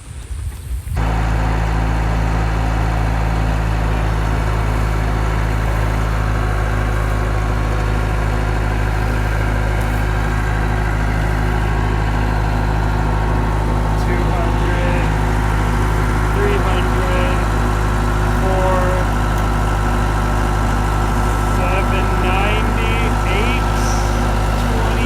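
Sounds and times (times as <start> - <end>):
skid steer engine idling: 1.0 - 25.0.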